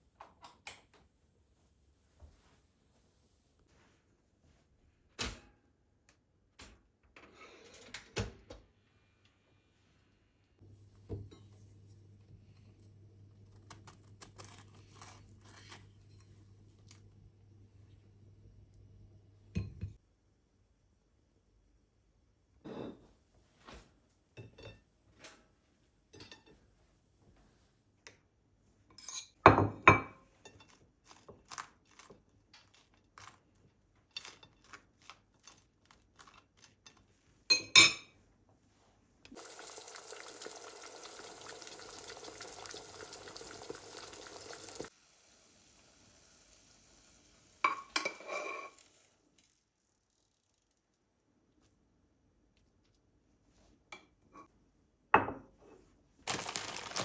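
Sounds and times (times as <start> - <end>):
dishes and utensils clinking: 47.7 - 48.8.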